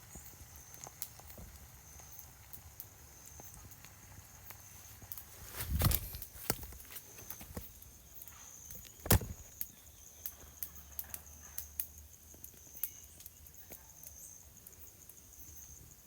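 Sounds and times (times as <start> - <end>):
crickets chirring: 0.0 - 16.0
sharp clicks and crackles: 0.7 - 14.2.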